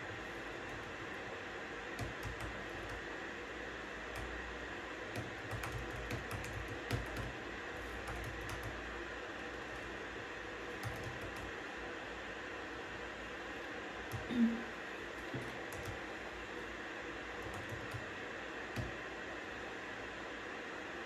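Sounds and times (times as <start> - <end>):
computer keyboard typing: 0.0 - 1.2, 1.9 - 3.1, 4.0 - 4.4, 5.1 - 10.0, 10.7 - 11.6, 14.0 - 14.3, 15.2 - 16.2, 17.4 - 19.1.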